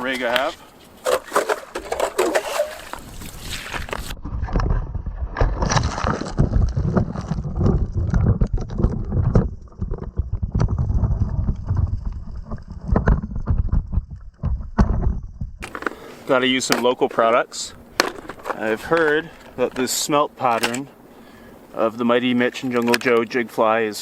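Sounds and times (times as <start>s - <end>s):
low rumble: 4.1s - 15.6s
muffled knocks and bumps: 6.3s - 15.6s.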